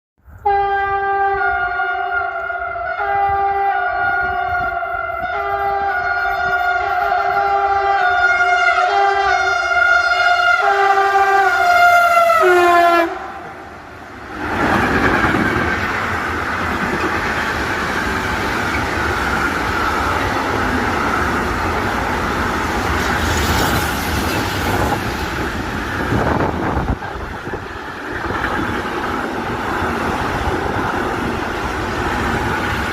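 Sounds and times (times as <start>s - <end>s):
locomotive horn chord: 0.4s - 13.6s
train wheels rumbling on rail: 2.3s - 32.9s.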